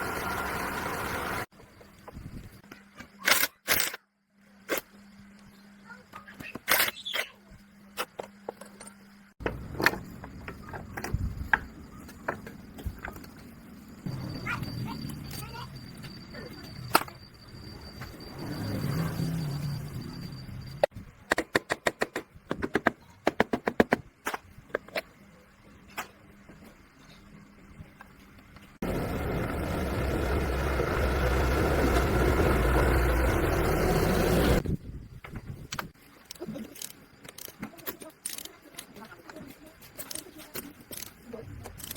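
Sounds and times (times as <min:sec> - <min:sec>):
motorcycle engine running: 0:00.0 - 0:01.5, 0:28.8 - 0:34.6.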